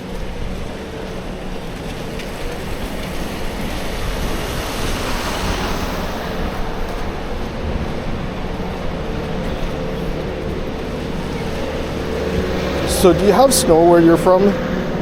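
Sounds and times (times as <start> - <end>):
city traffic rumble: 0.0 - 15.0
wind: 0.0 - 15.0.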